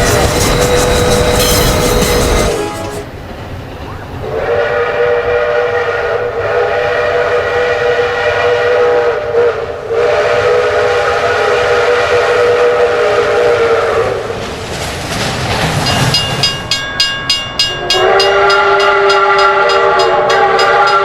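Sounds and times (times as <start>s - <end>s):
steam locomotive whistle blowing: 0.0s - 3.2s, 4.2s - 14.4s, 17.6s - 21.0s.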